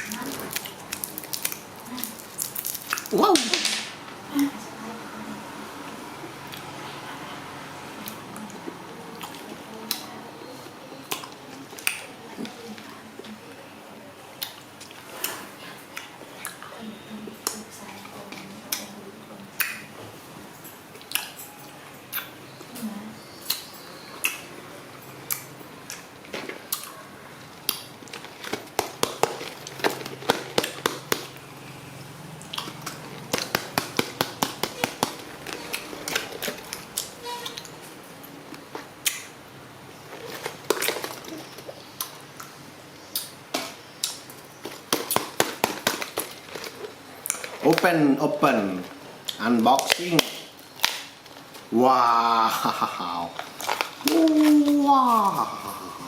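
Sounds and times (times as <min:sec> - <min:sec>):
plastic packaging crinkling: 0:00.0 - 0:03.6, 0:28.0 - 0:31.4, 0:32.6 - 0:37.0, 0:40.0 - 0:41.9, 0:44.6 - 0:48.0, 0:52.7 - 0:55.5.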